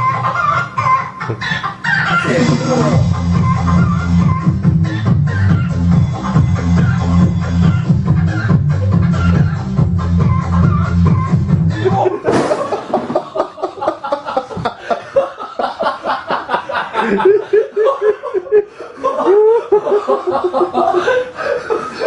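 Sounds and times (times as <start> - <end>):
dance music: 2.0 - 12.2
hearty laughter: 11.7 - 22.0.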